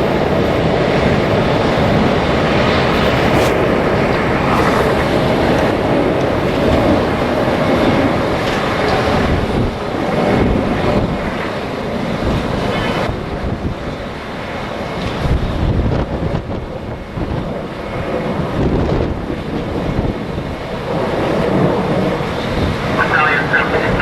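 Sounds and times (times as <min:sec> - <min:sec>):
gusting wind buffeting microphone: 0:00.0 - 0:24.0.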